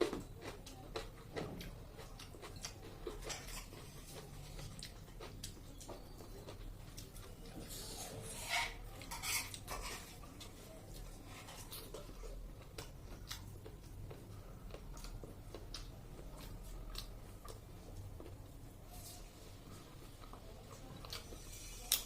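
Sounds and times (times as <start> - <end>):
cutlery clinking against a plate: 8.3 - 10.2.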